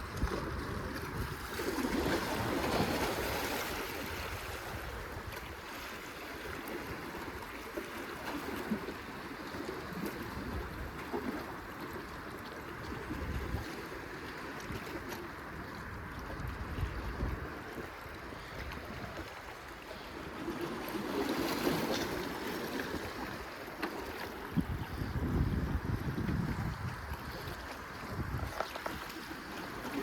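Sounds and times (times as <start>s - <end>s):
wind buffeting microphone: 0.0s - 5.7s, 15.7s - 19.4s, 24.2s - 29.2s
water moving: 0.0s - 30.0s.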